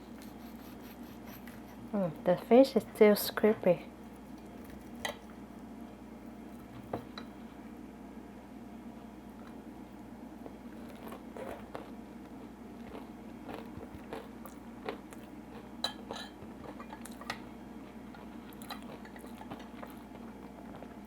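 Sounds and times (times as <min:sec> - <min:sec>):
chewing crunchy fried fish: 0:04.0 - 0:05.7, 0:09.4 - 0:21.0.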